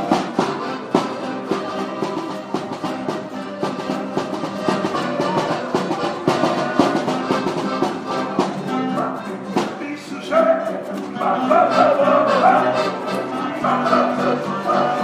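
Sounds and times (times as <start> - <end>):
drum hits: 0.0 - 8.7
live band playing instrumental: 0.0 - 15.0.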